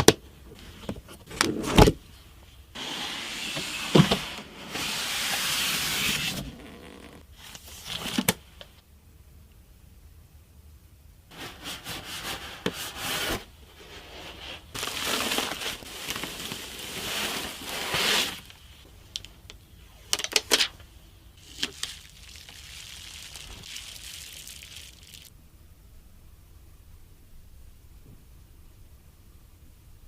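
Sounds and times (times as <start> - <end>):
hands rubbing and scraping packaging: 11.3 - 18.7, 21.4 - 25.3.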